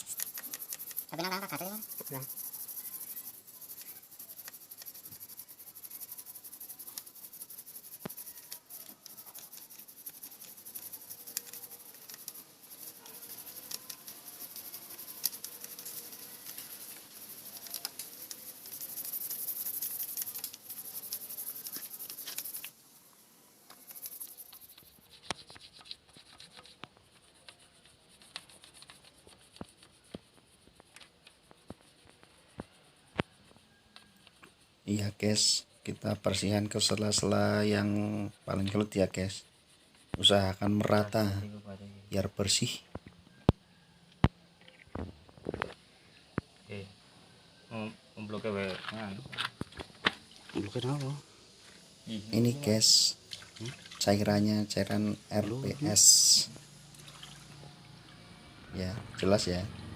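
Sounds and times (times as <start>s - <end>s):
brush scrubbing metal: 0.0s - 22.7s, 23.8s - 33.5s, 34.1s - 41.1s.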